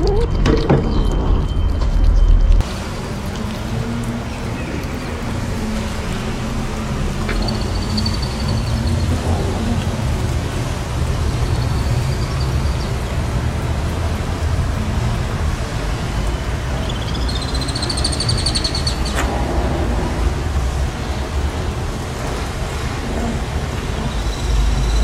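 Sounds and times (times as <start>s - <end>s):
bird trill: 16.9s - 19.2s.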